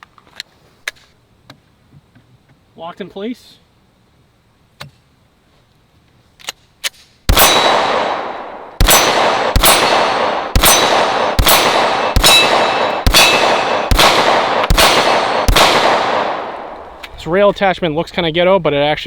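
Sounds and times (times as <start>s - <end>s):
steel targets ringing: 7.3s - 15.2s
pistol shots: 7.3s - 17.1s.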